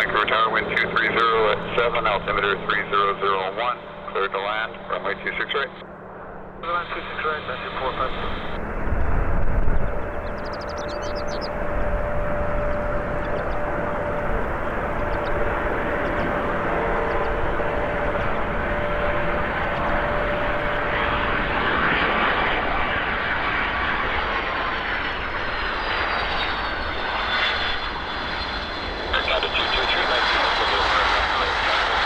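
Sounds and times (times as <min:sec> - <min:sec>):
jet engine noise: 0:00.0 - 0:32.0
high whine falling in pitch: 0:06.6 - 0:28.1.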